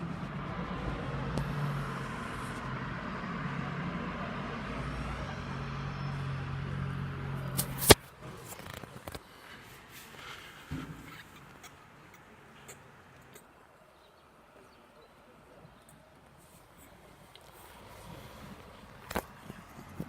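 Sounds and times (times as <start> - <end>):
sharp loud click: 7.6 - 8.0.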